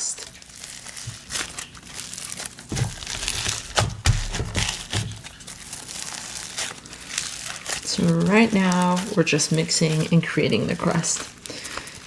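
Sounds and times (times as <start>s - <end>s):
small crinkly clicks and crackles: 0.2s - 12.0s
hands squishing slime: 2.6s - 10.1s
soft low thuds: 2.7s - 5.4s.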